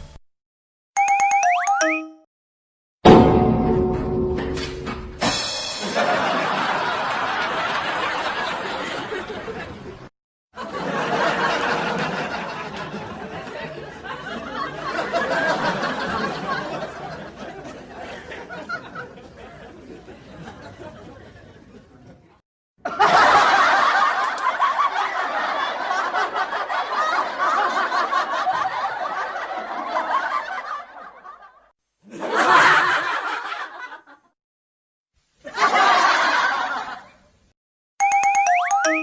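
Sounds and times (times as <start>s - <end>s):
crowd laughing: 5.8s - 34.3s, 35.4s - 37.3s.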